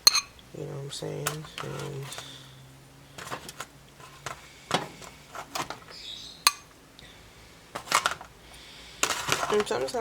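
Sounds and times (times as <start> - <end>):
dishes and cutlery clinking: 0.0 - 0.4.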